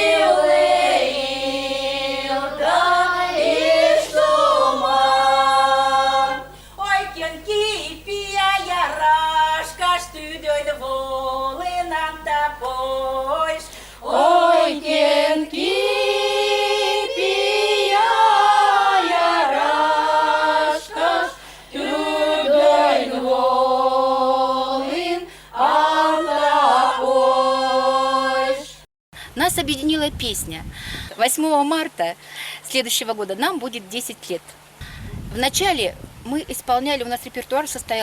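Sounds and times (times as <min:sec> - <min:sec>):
women's choir singing: 0:00.0 - 0:28.9.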